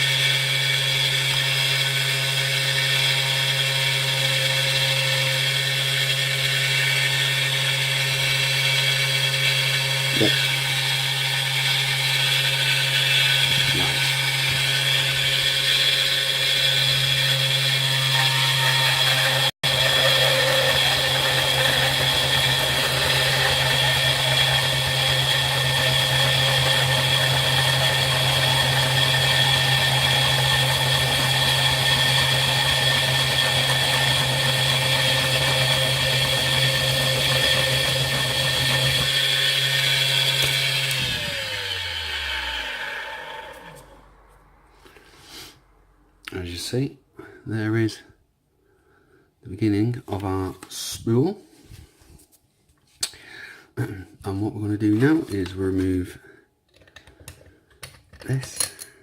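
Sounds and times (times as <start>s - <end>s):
power tool motor whining: 0.0s - 44.1s.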